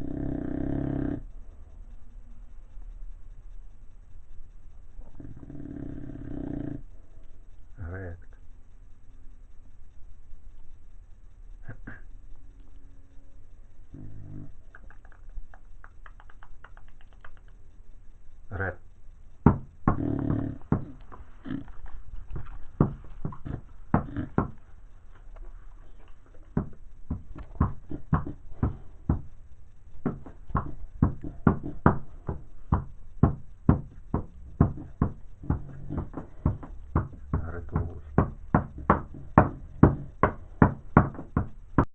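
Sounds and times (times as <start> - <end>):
dog snoring: 0.0 - 1.3, 5.0 - 6.9, 13.9 - 14.8, 19.6 - 24.6, 30.1 - 41.6.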